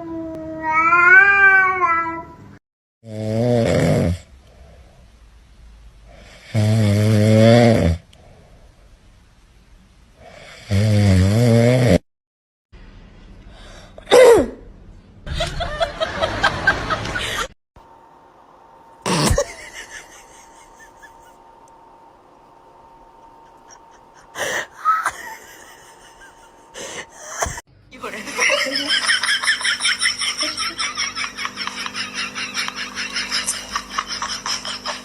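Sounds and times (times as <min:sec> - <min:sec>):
cat meowing: 0:00.3 - 0:02.3
loud snoring: 0:03.0 - 0:04.3, 0:06.1 - 0:08.1, 0:10.3 - 0:12.0.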